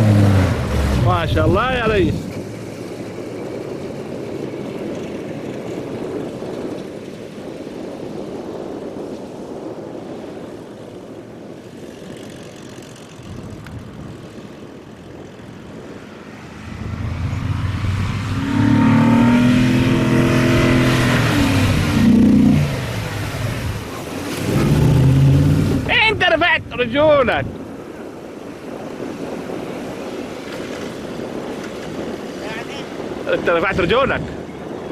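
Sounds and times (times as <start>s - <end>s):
engine revving: 0.0s - 2.4s, 16.2s - 26.2s.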